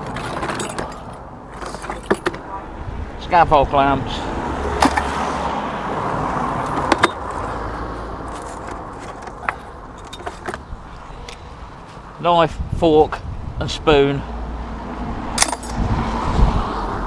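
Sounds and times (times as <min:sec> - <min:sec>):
road vehicle passing: 0:00.0 - 0:12.2, 0:13.2 - 0:17.0
metallic clinks of scrap iron: 0:15.4 - 0:16.0.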